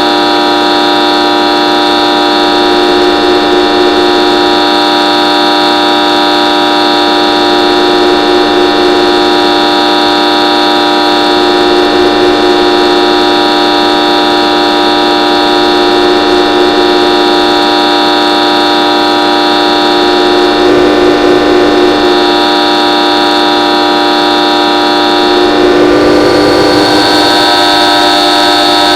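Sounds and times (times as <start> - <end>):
horn-like drone: 0.0 - 28.9.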